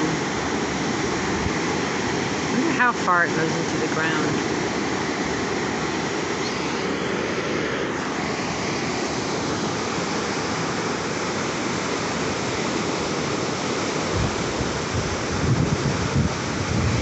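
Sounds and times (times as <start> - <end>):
sea surf washing against rock: 0.0 - 17.0.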